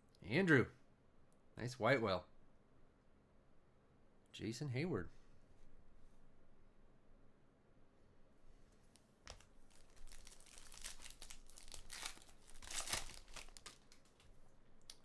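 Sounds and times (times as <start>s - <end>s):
wrapper being torn and crinkled: 9.3s - 14.3s.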